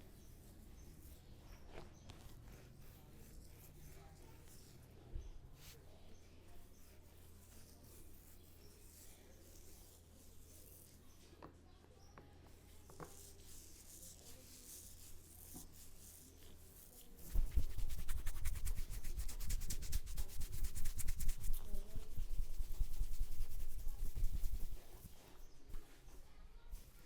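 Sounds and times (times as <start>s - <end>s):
soft rubbing: 0.0s - 11.7s, 12.4s - 27.0s
hands massaging head: 12.9s - 25.9s.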